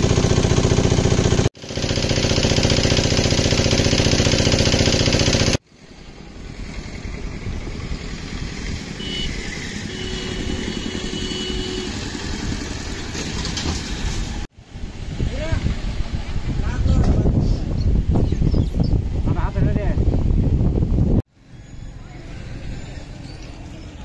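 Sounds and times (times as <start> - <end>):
loud engine running: 0.0 - 5.6.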